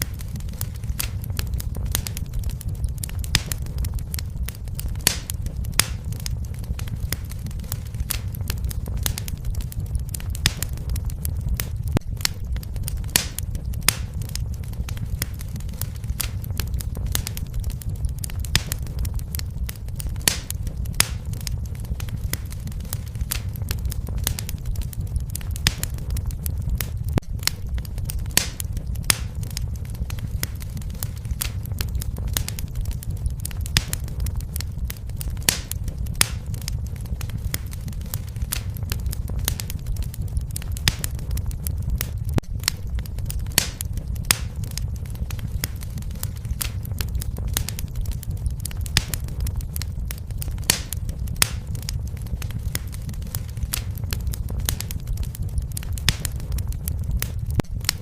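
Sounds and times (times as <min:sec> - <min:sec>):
fire crackling and popping: 0:00.0 - 0:58.0
low fire rumble: 0:00.0 - 0:58.0.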